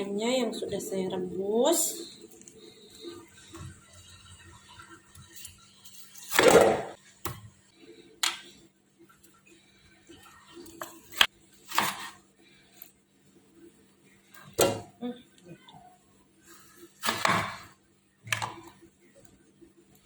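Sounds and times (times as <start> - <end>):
faint steady hum: 0.0 - 6.2.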